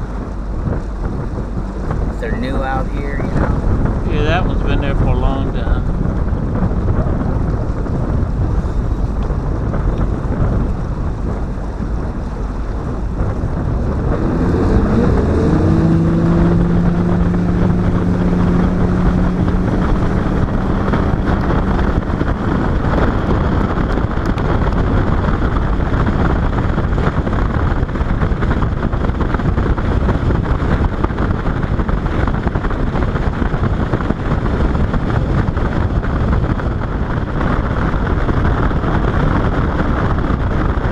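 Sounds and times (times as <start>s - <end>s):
water rushing: 0.0s - 23.1s
boat motor running: 0.0s - 40.9s
wind buffeting microphone: 0.0s - 40.9s.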